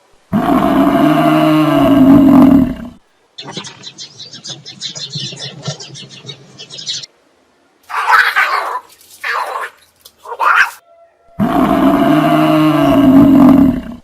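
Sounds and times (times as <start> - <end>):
long low animal call: 0.2 - 7.1, 10.4 - 14.0
animal cries: 0.4 - 6.1, 7.9 - 14.0.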